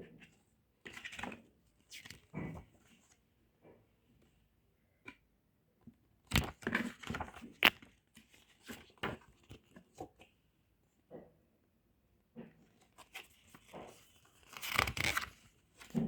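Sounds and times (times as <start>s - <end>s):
packaging crinkling and ripping: 14.4s - 16.0s.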